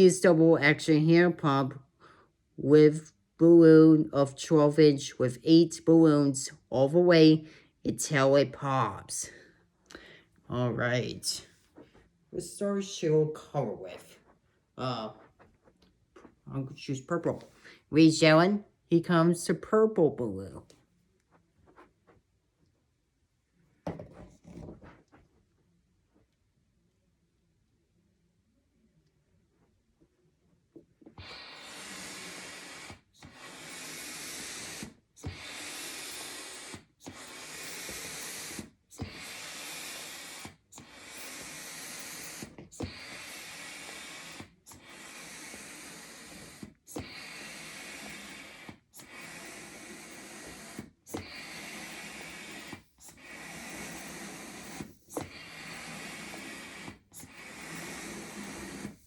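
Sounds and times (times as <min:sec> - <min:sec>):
hand pump rushing air: 0:31.2 - 0:59.0.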